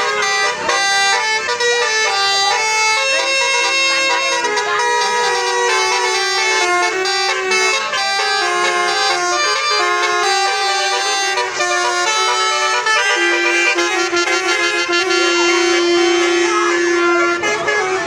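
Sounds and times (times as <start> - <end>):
musical air horn playing tune: 0.0 - 18.0.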